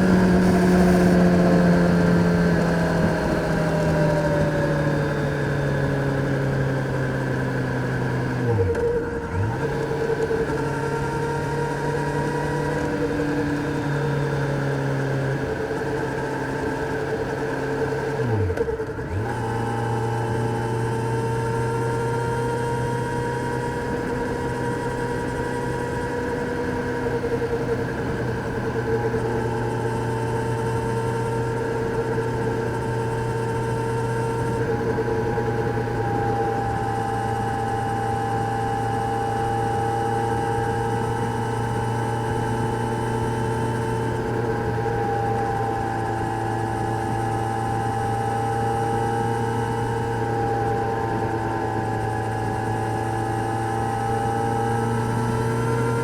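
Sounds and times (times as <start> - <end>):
motorcycle engine cruising: 0.0 - 56.0.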